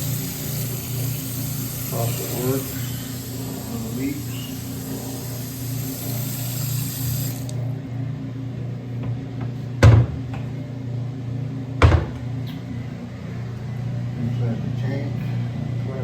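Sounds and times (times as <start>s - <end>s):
faucet water running: 0.0s - 7.7s
steady low hum: 0.0s - 16.0s.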